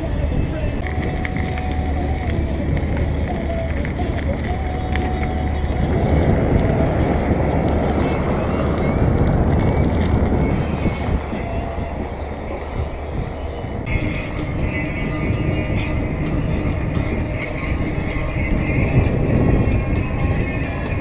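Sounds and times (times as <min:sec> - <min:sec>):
road noise: 0:00.0 - 0:21.0
rumbling wind: 0:00.0 - 0:21.0.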